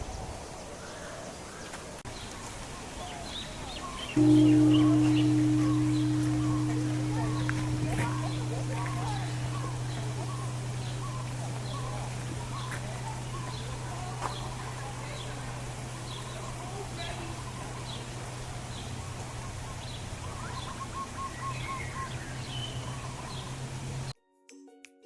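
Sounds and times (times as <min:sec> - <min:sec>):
birds chirping: 0:01.6 - 0:24.1
steady low hum: 0:04.2 - 0:24.1.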